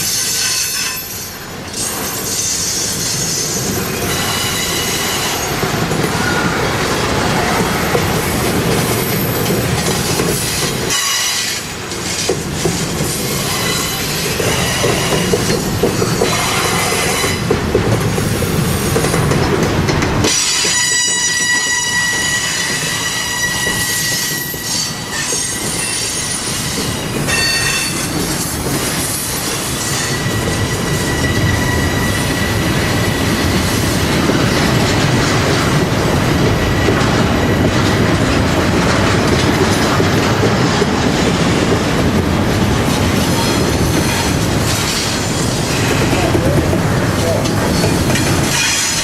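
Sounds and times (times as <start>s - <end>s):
train cars rumbling past: 0.0s - 49.0s
wheels clattering over rail joints: 0.0s - 49.0s
high-pitched wheel squeal: 20.6s - 28.0s.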